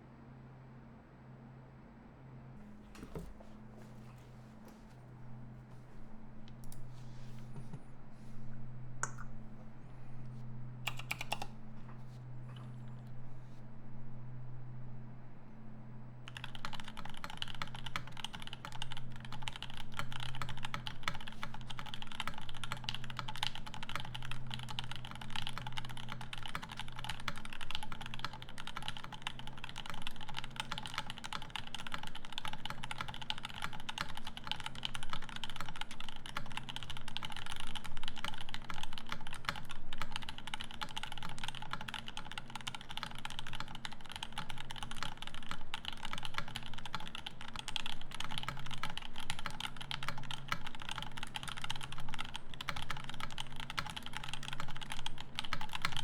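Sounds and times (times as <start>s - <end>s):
mechanical keyboard typing: 10.9s - 11.6s, 16.3s - 56.0s.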